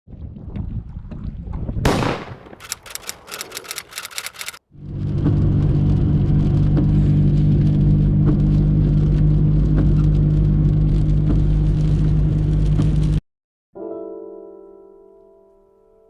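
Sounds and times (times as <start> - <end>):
light ticks: 2.6 - 4.6.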